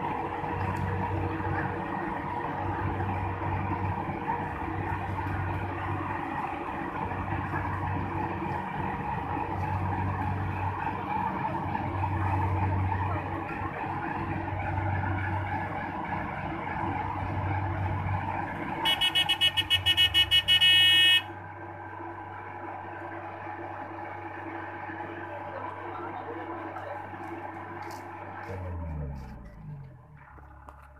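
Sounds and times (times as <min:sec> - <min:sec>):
harvester engine running: 0:00.0 - 0:30.9
rapid loud beeping: 0:18.8 - 0:21.3.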